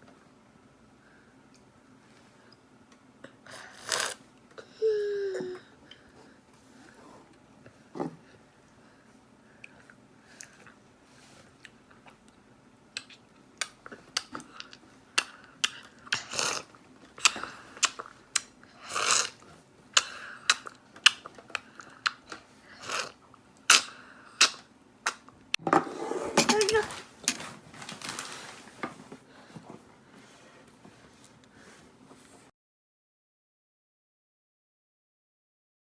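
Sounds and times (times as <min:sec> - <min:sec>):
slurping broth: 0:03.5 - 0:04.2, 0:16.1 - 0:16.8, 0:18.8 - 0:19.4, 0:22.7 - 0:23.2.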